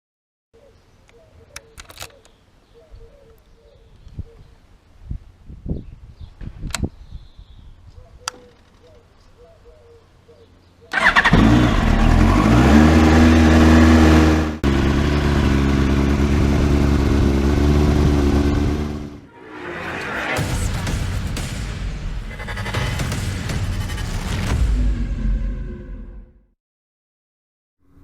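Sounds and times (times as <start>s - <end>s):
motorcycle engine running: 11.0s - 19.2s.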